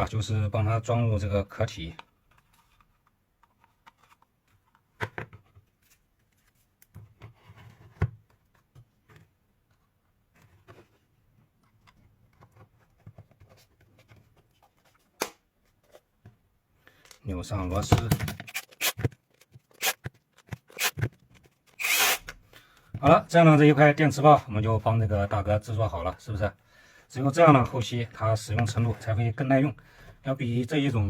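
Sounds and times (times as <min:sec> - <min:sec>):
plastic scraping and rubbing: 0:17.8 - 0:22.4.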